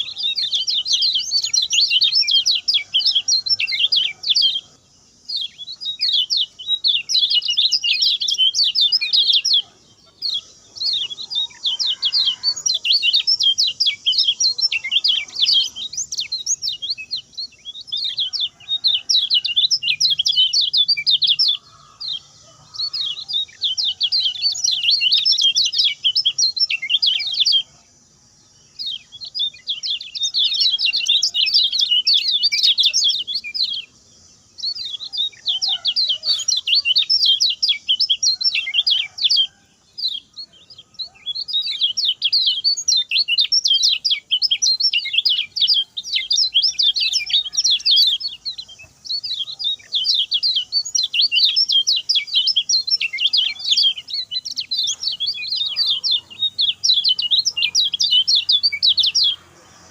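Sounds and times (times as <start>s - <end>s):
bird singing rapid high chirps: 0.0s - 59.9s.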